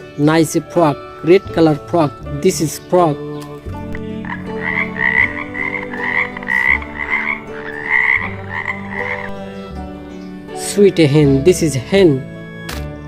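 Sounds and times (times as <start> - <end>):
frog croaking: 3.9 - 9.6.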